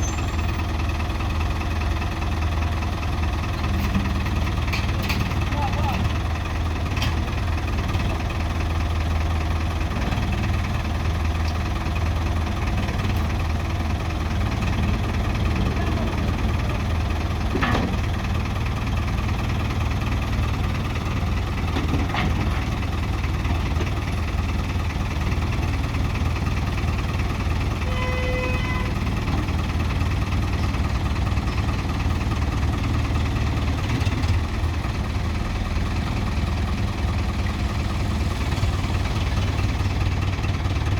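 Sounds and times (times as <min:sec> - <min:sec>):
short tone: 0:00.0 - 0:00.6, 0:27.8 - 0:29.0
backhoe engine idling: 0:00.0 - 0:40.9.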